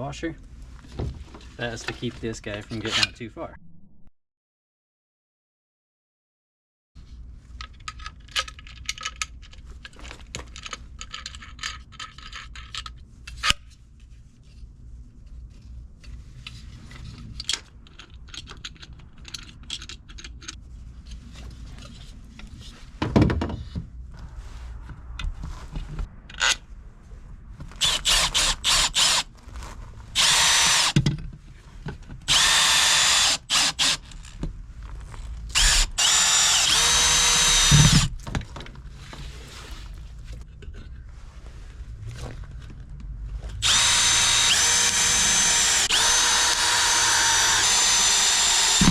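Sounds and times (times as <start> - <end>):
parts clicking and handling: 17.4 - 20.6
power drill whining: 27.8 - 29.3, 30.2 - 31.0, 32.3 - 34.4, 35.5 - 38.1, 43.6 - 48.9.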